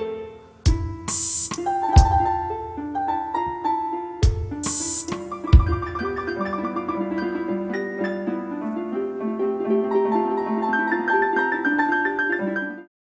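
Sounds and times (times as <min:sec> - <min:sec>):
piano-like instrumental music: 0:00.0 - 0:12.9.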